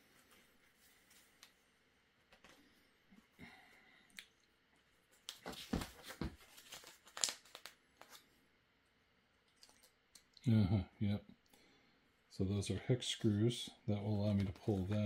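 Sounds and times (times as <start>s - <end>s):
packaging rustling and crinkling: 5.3s - 8.2s
packaging tearing: 6.6s - 8.2s.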